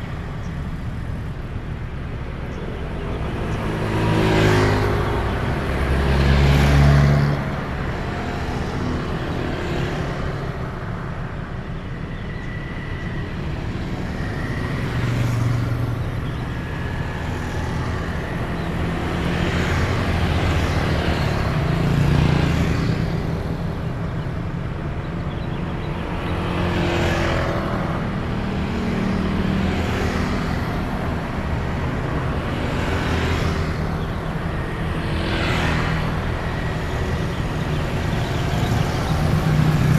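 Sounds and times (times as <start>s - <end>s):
motorcycles and cars passing: 0.0s - 39.9s.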